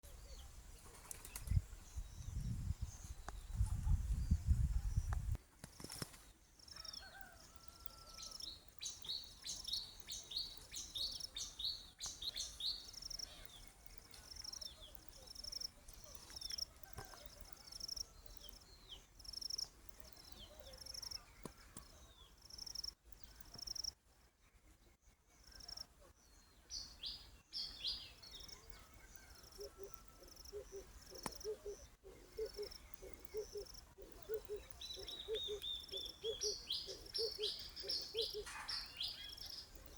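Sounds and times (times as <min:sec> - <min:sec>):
lower repeated bird call: 0:26.8 - 0:39.9.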